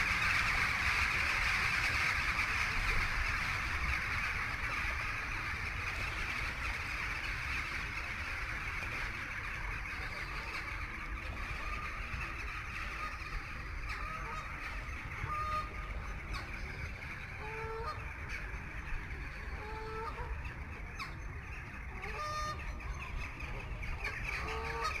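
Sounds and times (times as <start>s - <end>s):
steady rushing noise: 0.0s - 25.0s
waterfowl calling: 0.0s - 25.0s.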